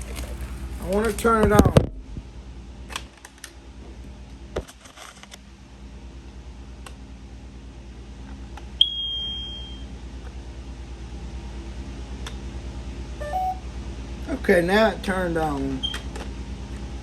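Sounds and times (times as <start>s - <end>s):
smoke alarm high beep: 8.8s - 9.9s, 13.2s - 13.7s.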